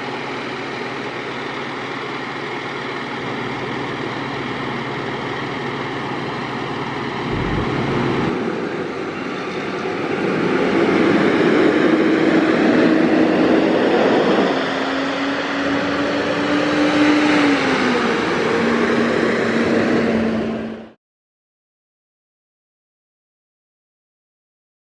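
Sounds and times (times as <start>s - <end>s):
heavy vehicle engine running: 0.8s - 10.0s
low thump: 7.3s - 8.4s.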